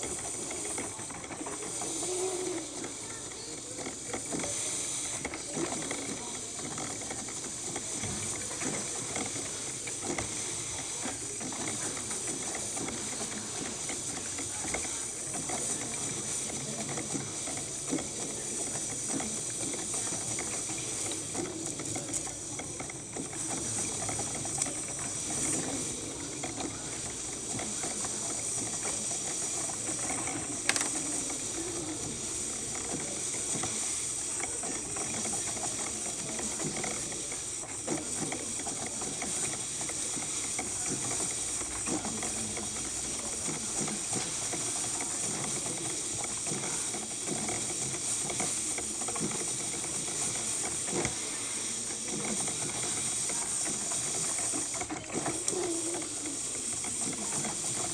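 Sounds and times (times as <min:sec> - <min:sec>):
coffee maker brewing: 0:00.0 - 0:57.9
gurgling and crackling water: 0:00.0 - 0:57.9.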